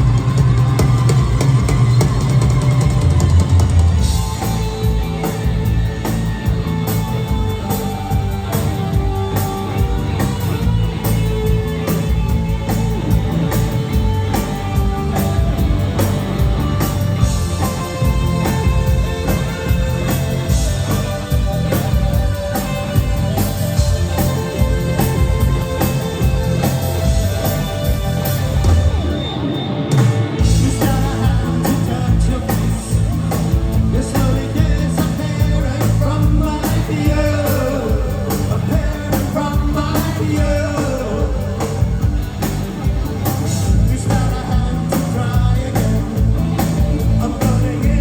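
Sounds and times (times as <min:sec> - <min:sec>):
live rock band playing: 0:00.0 - 0:48.0
person singing: 0:30.4 - 0:42.0.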